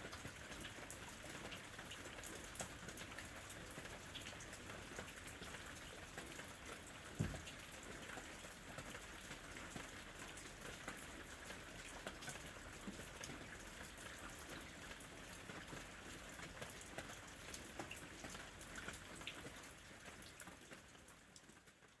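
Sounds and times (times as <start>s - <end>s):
rain drops on a surface: 0.0s - 22.0s
low thump: 7.2s - 7.5s.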